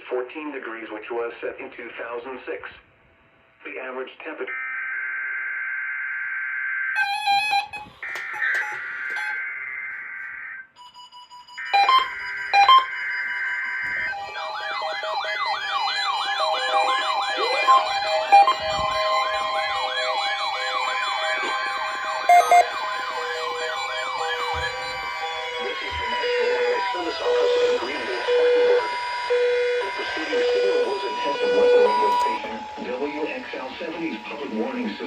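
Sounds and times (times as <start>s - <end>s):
warbling siren tones: 4.5s - 35.0s
steady beeps: 6.9s - 10.0s, 10.8s - 35.0s
buzzing data bursts: 11.6s - 35.0s.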